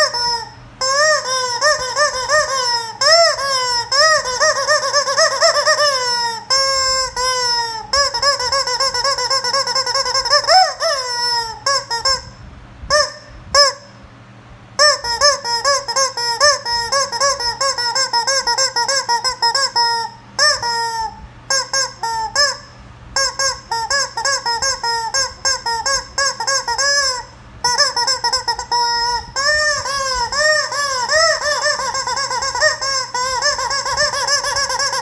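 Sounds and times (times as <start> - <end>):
rubber chicken toy squawking: 0.0 - 14.0, 14.8 - 35.0.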